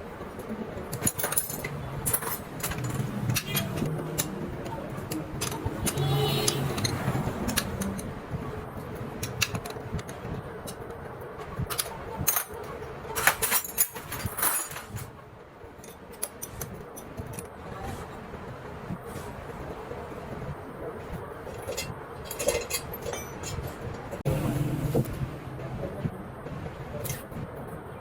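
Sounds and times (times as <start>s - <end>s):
metal tools clinking: 0.9s - 4.4s, 5.0s - 8.1s, 13.2s - 15.1s, 21.5s - 24.2s.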